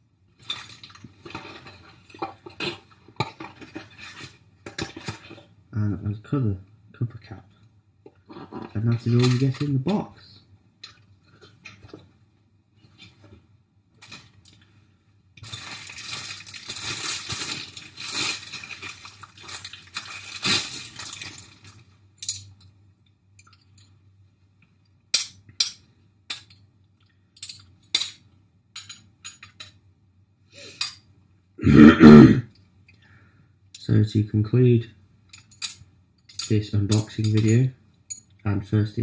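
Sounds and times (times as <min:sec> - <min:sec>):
metal parts rustling and clattering: 0:00.4 - 0:05.5, 0:08.3 - 0:10.0, 0:14.0 - 0:14.7, 0:15.4 - 0:22.7, 0:27.3 - 0:29.8, 0:35.3 - 0:38.4.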